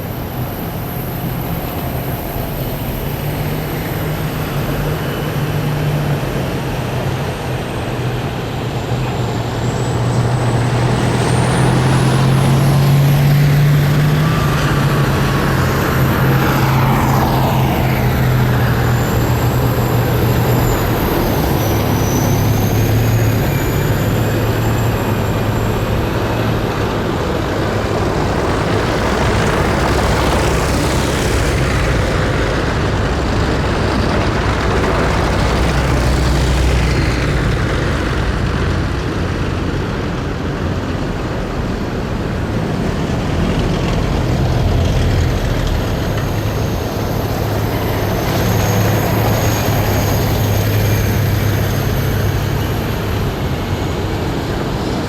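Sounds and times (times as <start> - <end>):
heavy vehicle engines droning: 0.0 - 55.0
high whining tones: 8.2 - 39.8.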